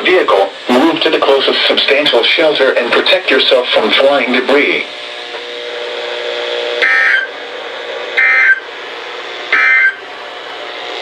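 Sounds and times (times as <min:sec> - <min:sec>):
steady radio hiss: 0:00.0 - 0:06.1
short data bursts: 0:06.8 - 0:07.3, 0:08.2 - 0:08.6, 0:09.5 - 0:10.0.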